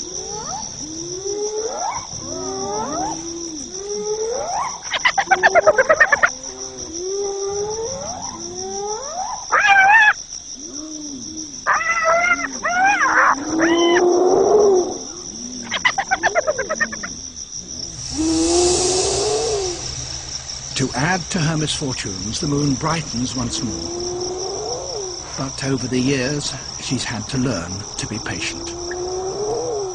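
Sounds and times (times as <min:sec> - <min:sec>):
crickets chirping: 0:00.0 - 0:29.9
hyenas whooping and yelping: 0:00.1 - 0:20.3.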